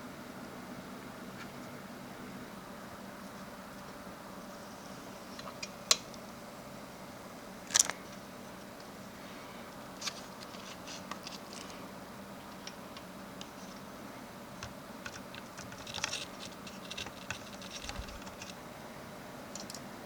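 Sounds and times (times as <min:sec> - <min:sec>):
steady low hum: 0:00.0 - 0:20.0
computer parts clicking: 0:14.6 - 0:18.6, 0:19.5 - 0:19.8.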